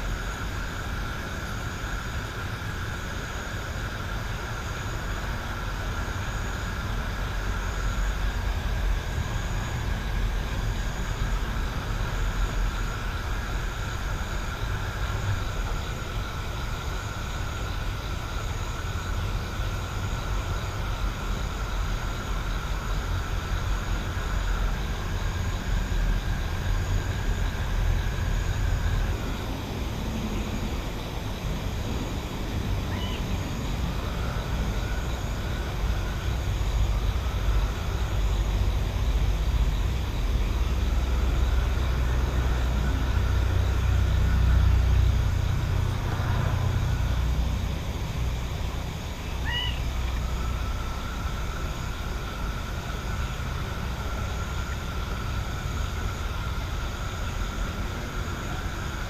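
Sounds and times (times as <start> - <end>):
distant traffic rumble: 0.0 - 59.0.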